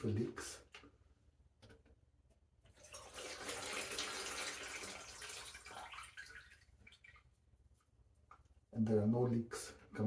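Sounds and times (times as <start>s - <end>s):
water running down sink drain: 2.7s - 7.3s.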